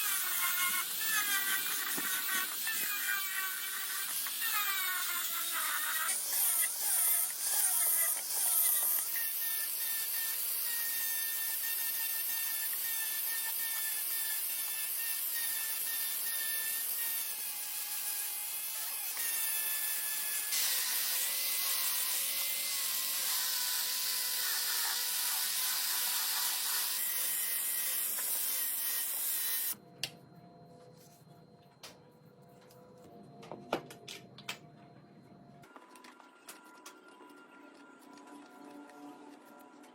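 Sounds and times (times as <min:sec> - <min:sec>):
tool scraping wood: 0:00.0 - 0:09.0.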